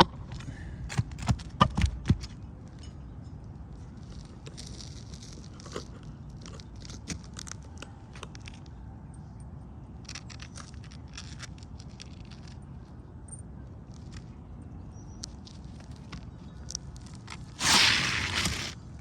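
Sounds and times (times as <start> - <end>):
roof shingles crackling and crunching: 15.5 - 18.8
loud scrape: 17.6 - 18.8.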